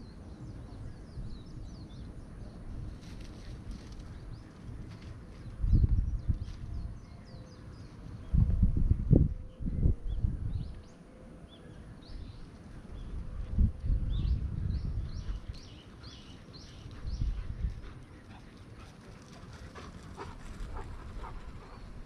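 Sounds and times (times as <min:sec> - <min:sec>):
bird chirping: 0:14.1 - 0:18.9.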